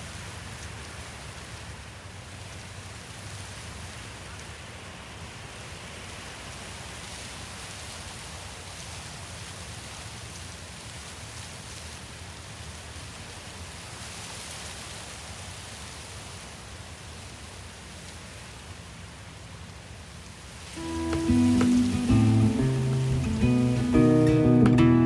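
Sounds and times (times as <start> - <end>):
steady hiss: 19.6 - 24.6.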